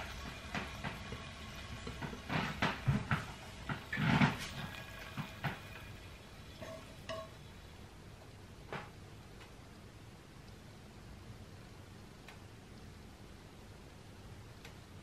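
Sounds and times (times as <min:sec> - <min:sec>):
kitchen utensils and dishes clinking: 0:00.0 - 0:07.4.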